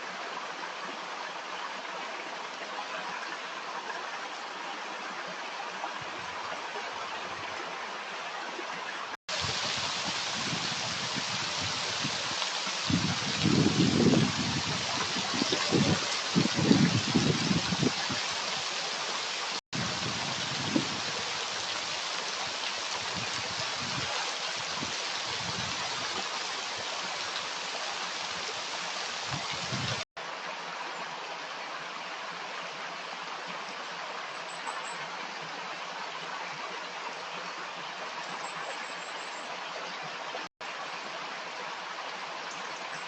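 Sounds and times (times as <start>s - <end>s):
water rushing in a stream: 0.0s - 43.0s
low rumbling gusts: 12.9s - 18.2s.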